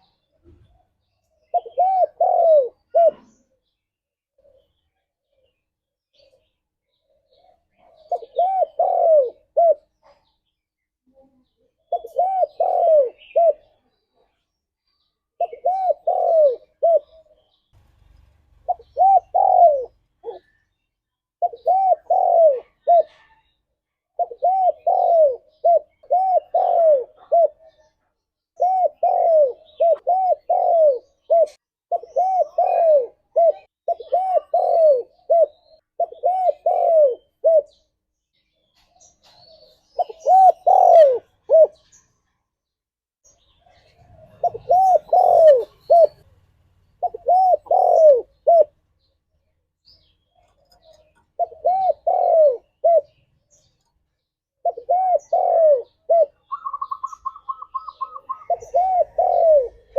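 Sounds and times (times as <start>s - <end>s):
dove cooing: 0.0s - 3.7s, 6.2s - 10.3s, 11.8s - 14.3s, 15.4s - 17.6s, 18.6s - 20.7s, 21.4s - 23.6s, 24.2s - 27.9s, 28.6s - 37.9s, 39.2s - 42.0s, 43.6s - 46.4s, 47.0s - 48.8s, 50.4s - 53.7s, 54.6s - 59.9s.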